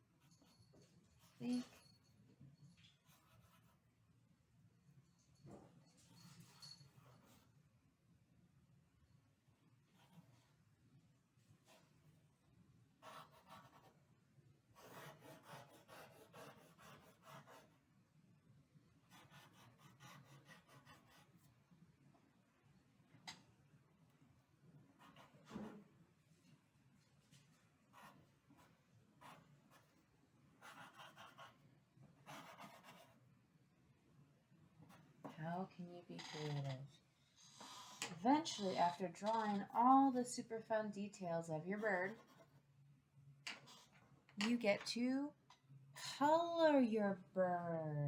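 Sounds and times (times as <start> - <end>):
drawing tool scratching paper: 13.0 - 14.0, 14.8 - 17.8, 19.1 - 21.4, 30.6 - 31.6, 32.2 - 33.2, 37.4 - 39.7.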